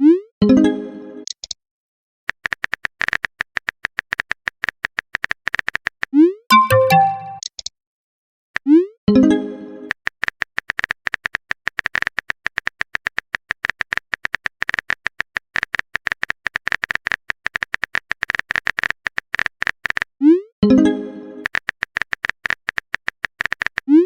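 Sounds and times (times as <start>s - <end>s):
keyboard typing clicks: 6.5s - 7.6s.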